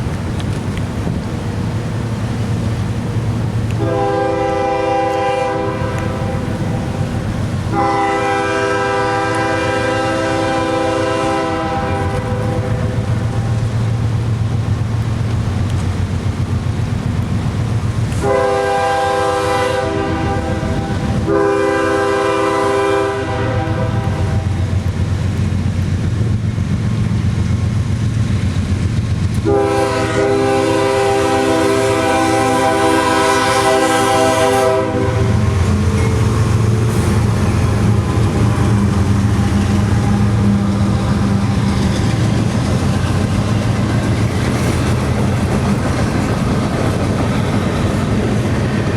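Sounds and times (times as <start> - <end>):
diesel locomotives rumbling: 0.0 - 48.9
locomotive air horn blasts: 3.8 - 7.1, 7.7 - 13.6, 18.2 - 24.7, 29.4 - 39.1
wheels clacking over rails: 35.2 - 48.9.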